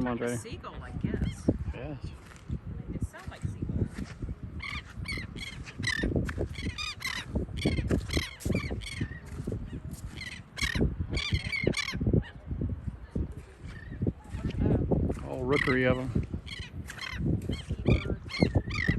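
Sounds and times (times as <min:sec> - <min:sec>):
terns calling harshly: 0:04.6 - 0:09.2, 0:15.5 - 0:18.9.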